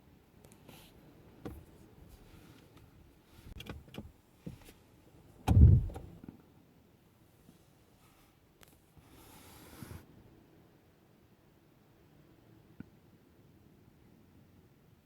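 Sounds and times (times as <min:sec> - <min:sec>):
loud low thump: 0:05.5 - 0:06.2.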